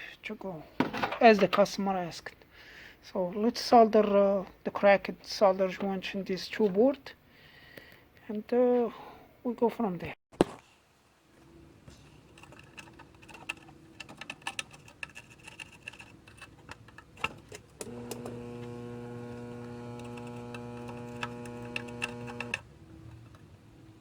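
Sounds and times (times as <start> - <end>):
steady electric hum: 11.3 - 24.0.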